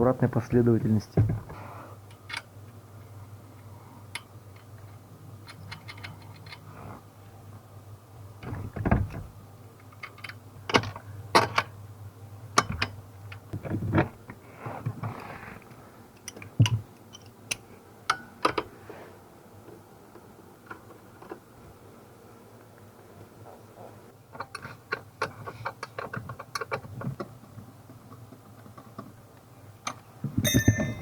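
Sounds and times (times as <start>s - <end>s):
hand tools clicking and knocking: 29.9s - 31.0s.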